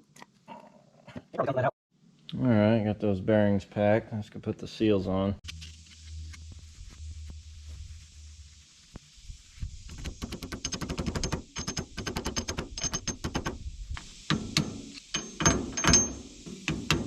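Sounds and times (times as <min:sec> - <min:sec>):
hammer tapping on metal: 0:14.3 - 0:17.0.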